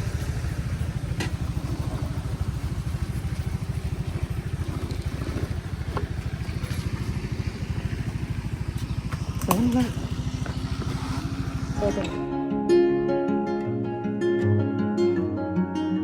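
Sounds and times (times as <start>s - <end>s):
scooter engine running: 0.0s - 12.6s.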